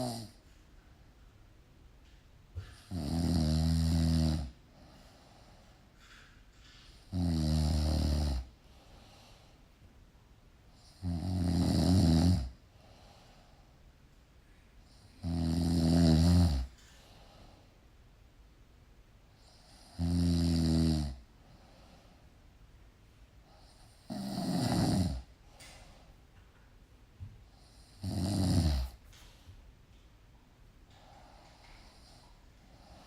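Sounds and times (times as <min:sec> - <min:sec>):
person snoring: 0:00.0 - 0:00.4, 0:02.7 - 0:04.6, 0:07.1 - 0:08.5, 0:10.8 - 0:12.5, 0:15.1 - 0:16.7, 0:19.7 - 0:21.2, 0:23.8 - 0:25.3, 0:27.6 - 0:29.0.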